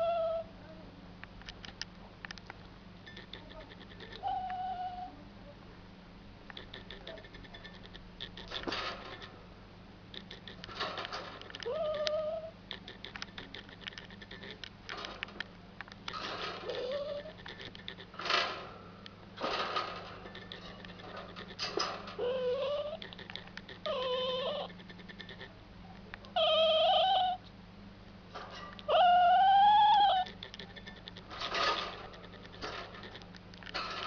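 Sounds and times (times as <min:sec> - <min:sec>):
squirrel crying: 0:00.0 - 0:00.6, 0:03.1 - 0:05.2, 0:06.6 - 0:09.4, 0:10.2 - 0:10.8, 0:11.4 - 0:14.7, 0:16.6 - 0:18.4, 0:20.2 - 0:25.5, 0:26.3 - 0:27.4, 0:28.8 - 0:33.4
squirrel rasping noises: 0:01.5 - 0:05.1, 0:06.4 - 0:27.4, 0:28.4 - 0:34.0.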